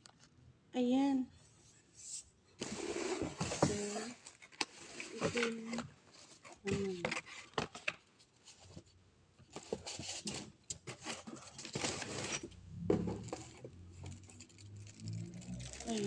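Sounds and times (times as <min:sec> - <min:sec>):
packaging rustling and scraping: 0:02.6 - 0:16.0.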